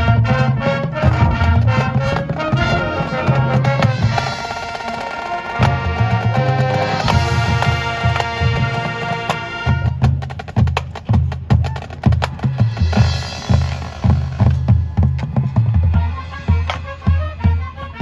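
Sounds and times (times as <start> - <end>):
low bass notes: 0.0 - 4.9
wind instruments holding chords: 0.0 - 10.4, 15.8 - 18.0.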